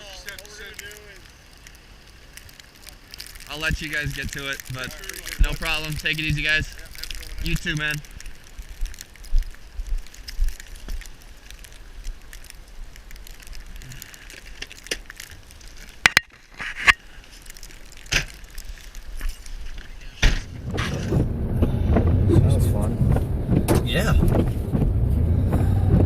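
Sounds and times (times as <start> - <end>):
low steady rumble: 17.4 - 26.0.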